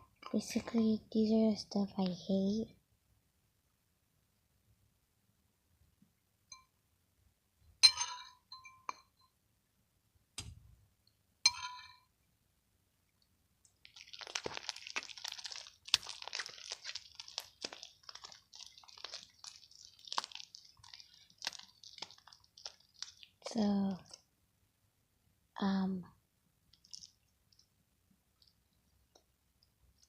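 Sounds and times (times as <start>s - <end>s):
slime crackling and squishing: 13.7s - 24.2s, 26.7s - 27.8s.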